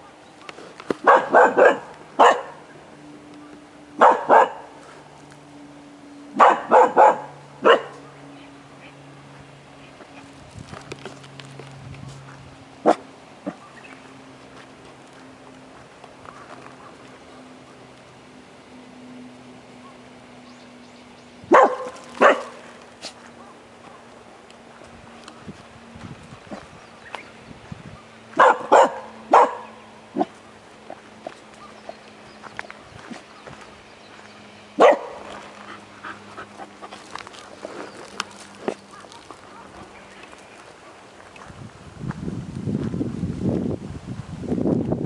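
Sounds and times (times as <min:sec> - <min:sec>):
dog barking: 0:01.0 - 0:02.6, 0:04.0 - 0:04.7, 0:06.4 - 0:08.1, 0:21.5 - 0:22.5, 0:28.4 - 0:30.3, 0:34.8 - 0:35.2, 0:39.5 - 0:39.8.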